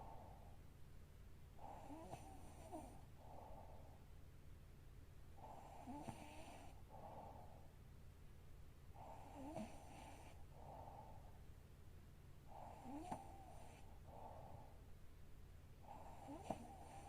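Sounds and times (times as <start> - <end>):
woman snoring faintly: 5.5 - 6.8, 9.0 - 10.4, 12.5 - 13.9, 15.9 - 17.0.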